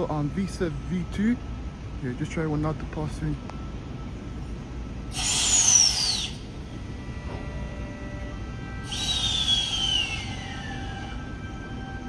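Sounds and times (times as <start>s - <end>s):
train compressed-air hiss: 5.1s - 6.6s, 8.7s - 11.2s.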